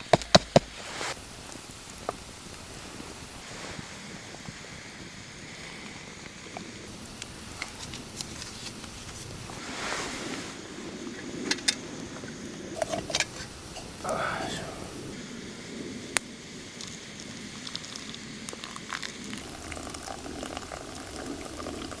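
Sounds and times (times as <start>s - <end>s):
rushing outdoor noise: 0.0s - 22.0s.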